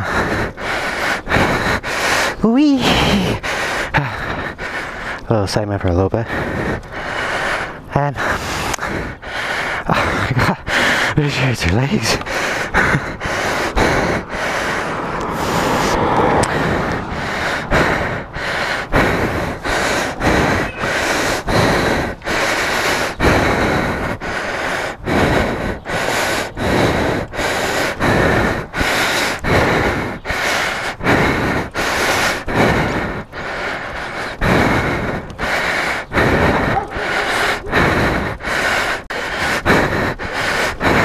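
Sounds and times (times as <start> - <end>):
man panting heavily: 0.0 - 41.0.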